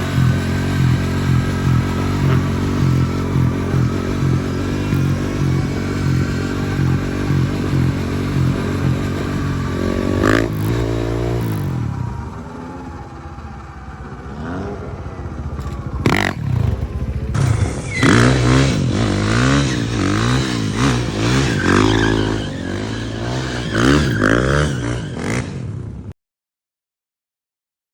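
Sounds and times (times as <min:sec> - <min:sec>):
motorcycle engine revving: 0:00.0 - 0:26.1
sharp clatter: 0:15.4 - 0:22.9.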